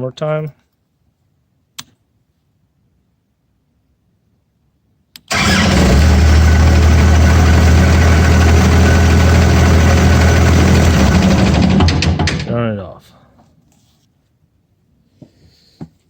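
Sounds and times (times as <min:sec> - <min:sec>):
engine running loud: 0:05.3 - 0:12.5.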